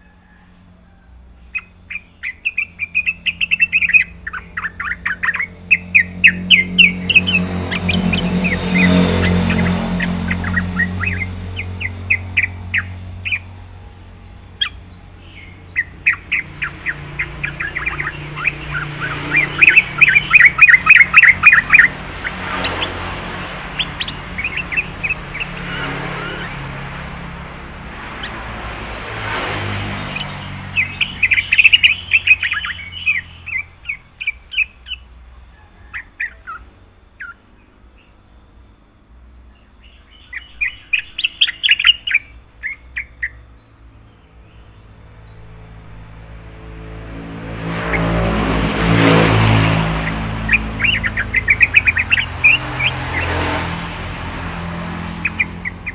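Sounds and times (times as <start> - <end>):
bird chirping song: 0.0 - 55.9
swell of noise: 5.5 - 33.0.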